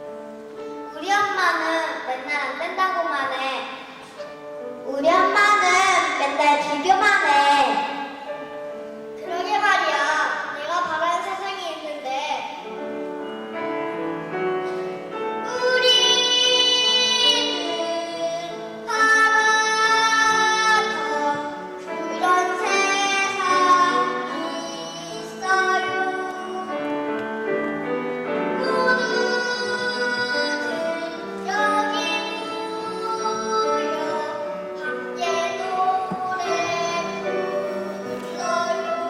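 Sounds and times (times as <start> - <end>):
instrumental accompaniment: 0.0 - 39.0
children's choir singing: 14.7 - 39.0.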